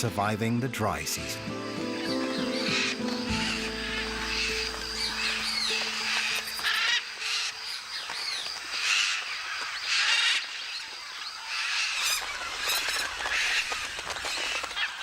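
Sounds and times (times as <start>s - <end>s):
parrots squawking: 1.6s - 7.6s.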